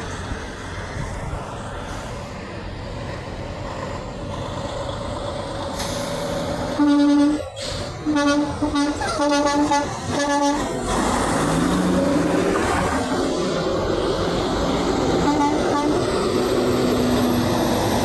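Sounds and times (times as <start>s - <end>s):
traffic and engine noise: 0.0s - 18.0s
truck horn blasts: 6.7s - 10.8s, 15.1s - 16.2s.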